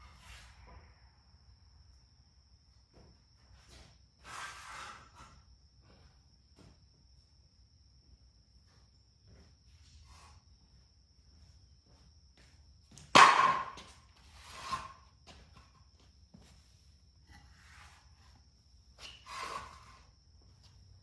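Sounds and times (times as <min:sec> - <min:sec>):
cricket chirring: 0:00.0 - 0:21.0.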